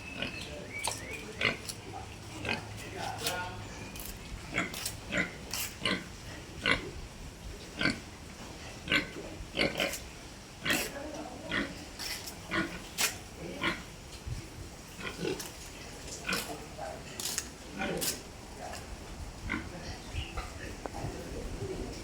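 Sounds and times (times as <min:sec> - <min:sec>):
pig grunting: 0:01.3 - 0:03.3, 0:04.5 - 0:07.0, 0:07.7 - 0:14.0, 0:14.9 - 0:18.3.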